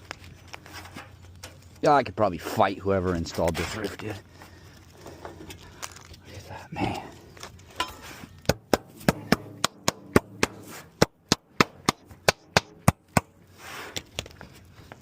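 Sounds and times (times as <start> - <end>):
hammer striking shingle roof: 8.5 - 13.4.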